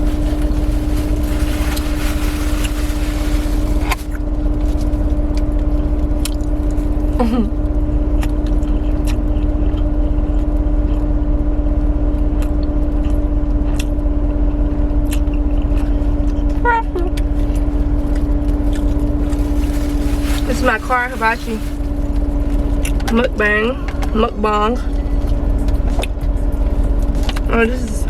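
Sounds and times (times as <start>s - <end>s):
car interior rumble: 0.0s - 5.3s, 15.8s - 28.0s
person chewing food: 8.1s - 11.1s.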